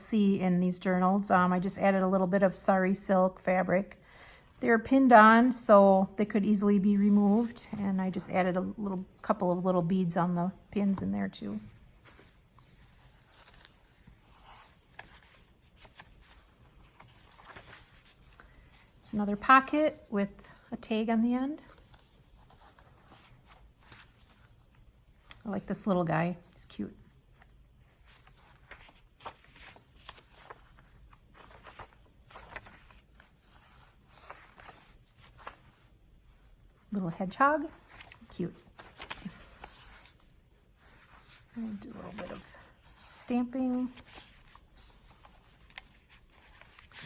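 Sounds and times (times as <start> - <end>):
paper pages rustling and turning: 10.8 - 20.7, 21.6 - 26.6, 27.3 - 47.0.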